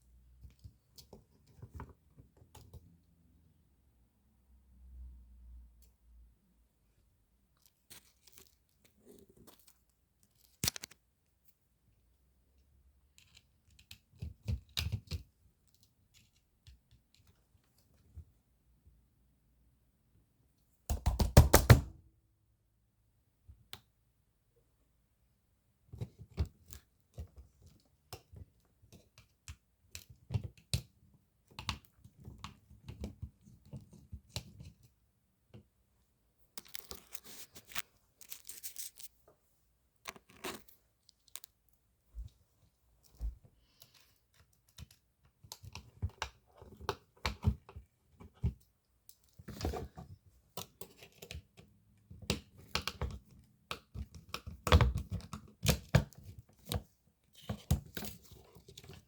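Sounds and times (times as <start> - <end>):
tearing crinkling rustle: 36.6 - 39.2.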